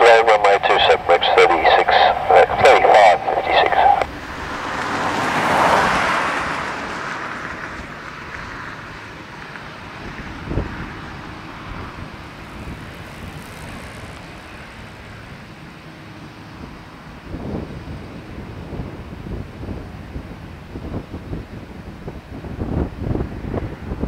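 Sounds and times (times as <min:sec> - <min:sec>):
passing vehicle rushing: 0:03.8 - 0:15.6.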